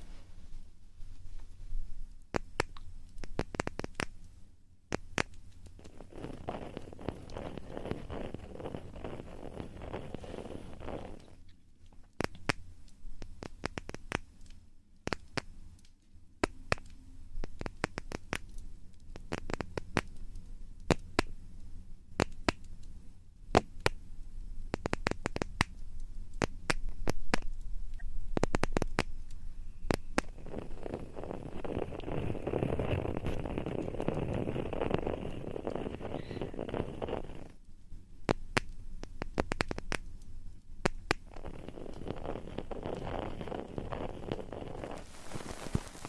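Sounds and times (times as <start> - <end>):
crackles and clicks: 0.0 - 46.0
steady rubbing noise: 5.8 - 11.4, 30.0 - 37.6, 41.2 - 46.0.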